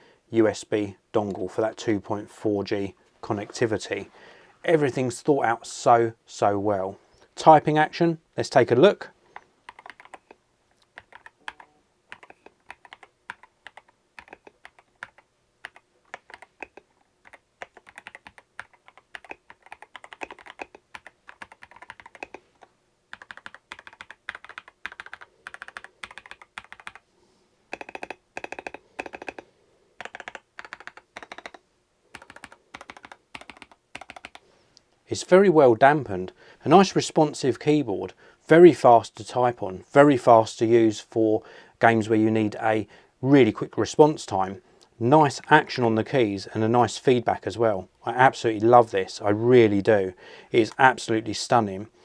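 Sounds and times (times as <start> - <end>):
mechanical keyboard typing: 9.7 - 27.0, 27.7 - 29.4, 30.0 - 34.4.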